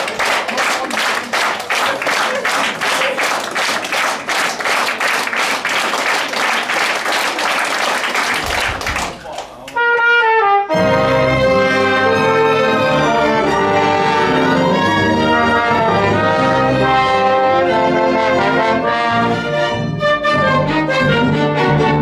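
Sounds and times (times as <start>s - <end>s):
brass section: 6.8s - 22.0s
orchestra playing loudly: 9.7s - 22.0s.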